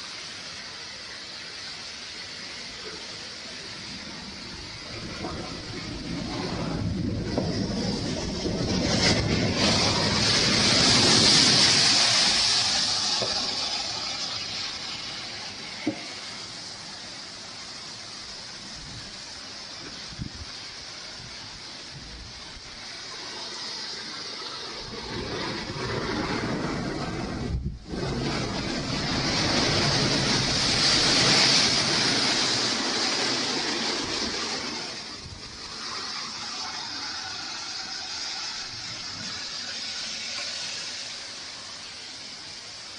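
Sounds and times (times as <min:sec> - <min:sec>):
wind gust rushing: 0:04.0 - 0:15.1, 0:19.9 - 0:40.0.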